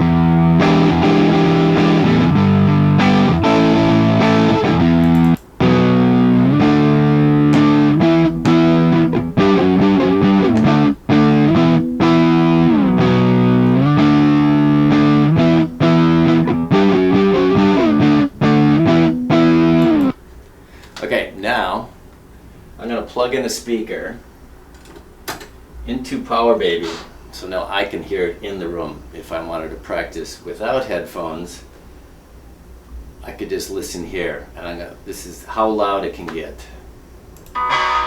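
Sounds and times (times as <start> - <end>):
distorted electric guitar chords: 0.0 - 20.2, 37.5 - 38.0.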